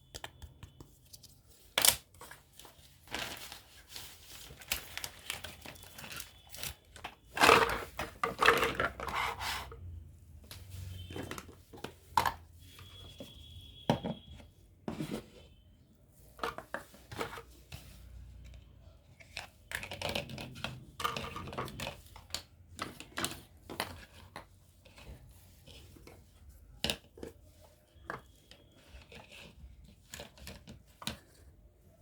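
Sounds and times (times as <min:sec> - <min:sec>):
plastic packaging crinkling and tearing: 0:01.6 - 0:08.9.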